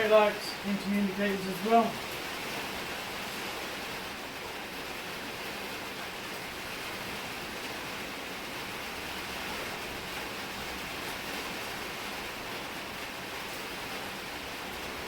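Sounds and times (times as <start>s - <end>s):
heavy rain on a shed roof: 0.0s - 15.0s.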